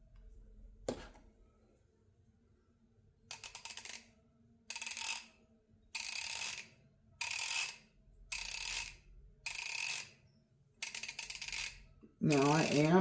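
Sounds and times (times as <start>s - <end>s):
ratchet clicking: 3.3s - 4.0s, 4.7s - 5.3s, 6.0s - 10.1s, 10.8s - 12.9s.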